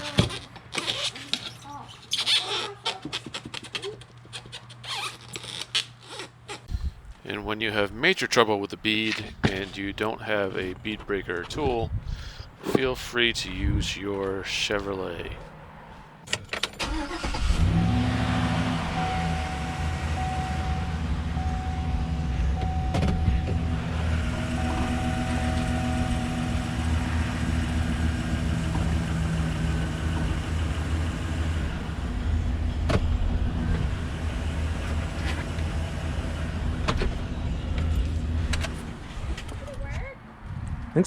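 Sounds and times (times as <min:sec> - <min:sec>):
car engine idling: 0:06.8 - 0:39.4.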